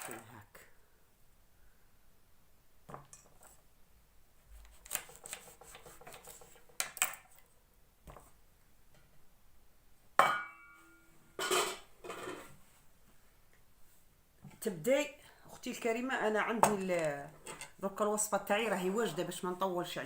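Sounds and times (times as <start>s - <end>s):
kitchenware knocks and clinks: 10.2s - 12.5s.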